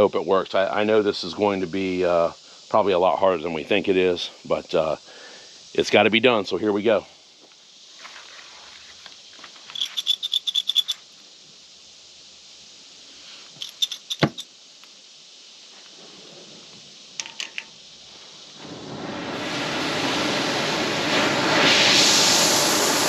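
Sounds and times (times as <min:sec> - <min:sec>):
small metal objects clinking: 0:09.6 - 0:11.1, 0:13.6 - 0:14.5.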